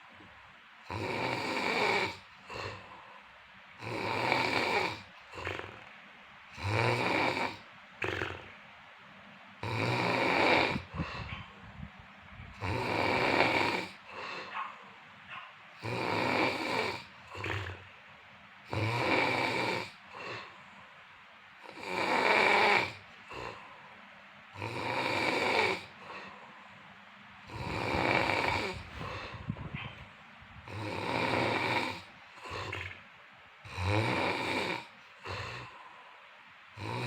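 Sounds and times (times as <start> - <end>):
person snoring: 0.9 - 3.2, 3.8 - 5.9, 6.5 - 8.6, 9.6 - 11.3, 12.5 - 14.6, 15.8 - 17.9, 18.7 - 20.7, 21.6 - 23.9, 24.6 - 26.5, 27.4 - 29.6, 30.6 - 33.0, 33.6 - 36.2, 36.8 - 37.0
quiet breath: 2.2 - 3.6, 10.8 - 12.6, 13.9 - 15.4, 20.0 - 21.1, 23.0 - 24.2, 25.8 - 30.8, 34.8 - 36.4.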